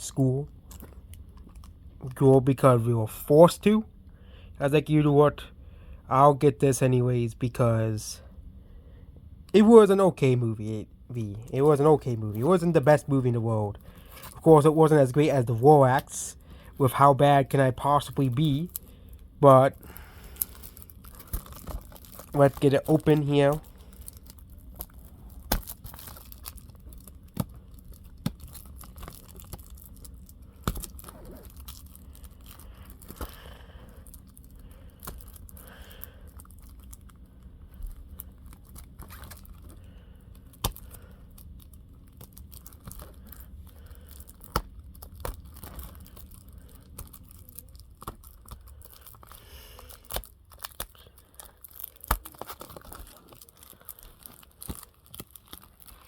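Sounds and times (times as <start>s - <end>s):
plastic wrapping tearing and crinkling: 17.0s - 56.0s.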